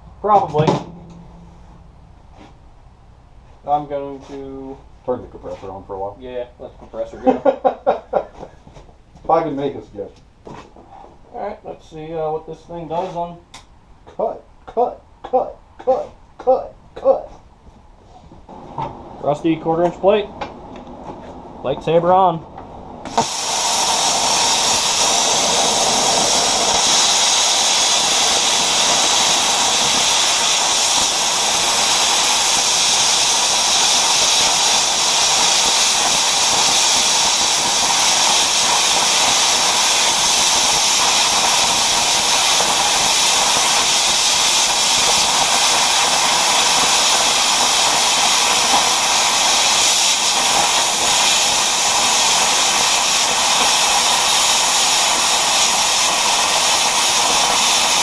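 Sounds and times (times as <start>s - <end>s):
plasma cutter arc hissing: 23.1s - 58.0s.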